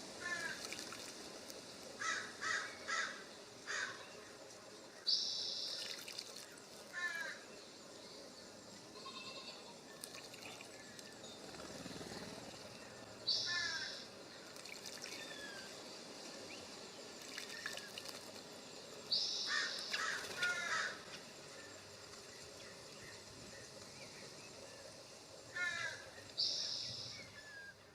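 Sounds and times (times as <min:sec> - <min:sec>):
small birds chirping: 0:00.0 - 0:27.9.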